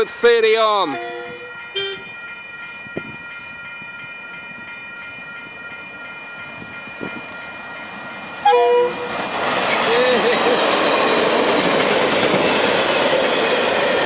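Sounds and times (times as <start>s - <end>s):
diesel locomotives rumbling: 0.0s - 14.0s
locomotive horn: 0.9s - 2.1s, 8.4s - 9.1s.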